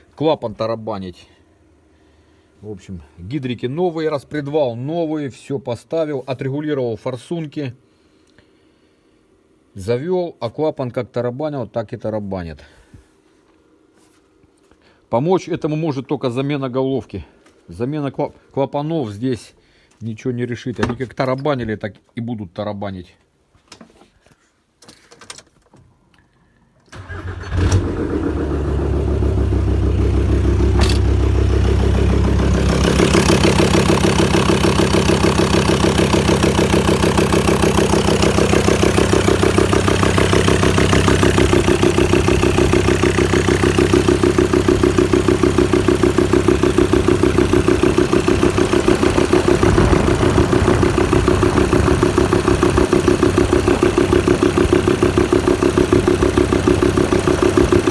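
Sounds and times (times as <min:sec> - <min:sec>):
diesel engine starting: 0:26.9 - 0:57.9
diesel engine idling with knocking: 0:28.4 - 0:57.9.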